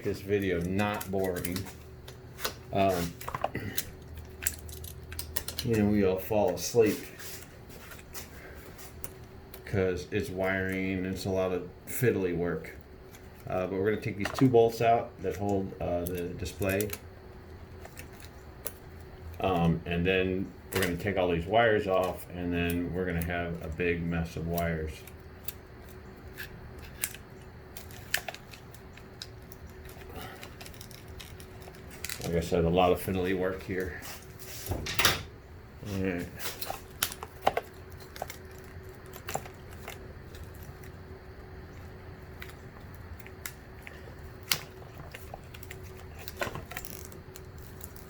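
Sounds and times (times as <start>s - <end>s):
faint steady hum: 0.0s - 48.0s
small tools clicking and tapping: 0.4s - 5.8s.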